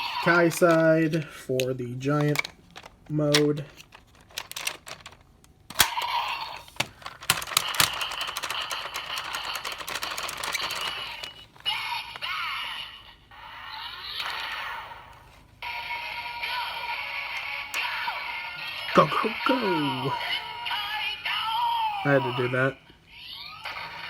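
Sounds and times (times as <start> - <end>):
toy plastic clicks: 0.0 - 1.2, 2.1 - 12.2
toy speaker music: 15.6 - 24.0.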